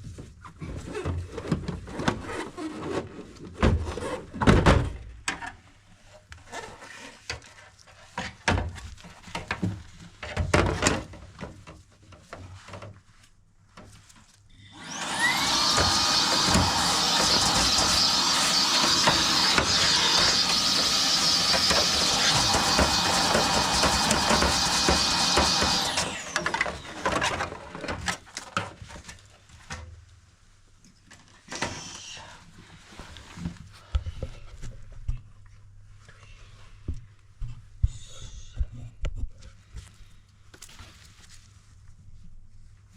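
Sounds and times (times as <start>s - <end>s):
cordless air blower motor: 14.7s - 27.7s.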